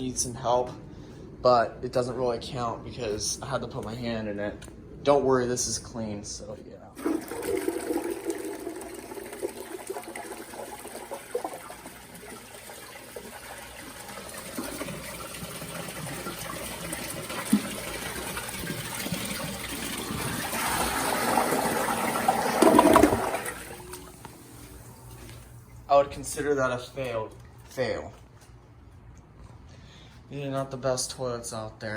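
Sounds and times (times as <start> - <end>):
toilet flushing and gurgling: 7.0 - 25.9.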